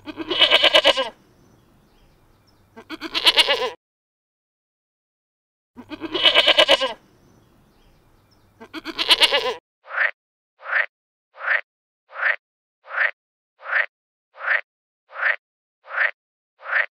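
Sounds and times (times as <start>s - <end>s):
goat bleating: 0.0s - 1.2s, 2.7s - 3.8s, 5.8s - 7.1s, 8.5s - 10.1s.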